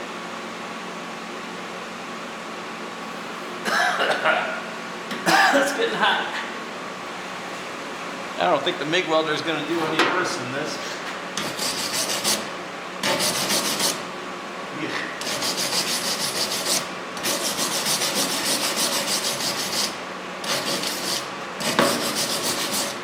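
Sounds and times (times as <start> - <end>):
welding arc buzzing: 5.1 - 14.2, 14.8 - 23.0.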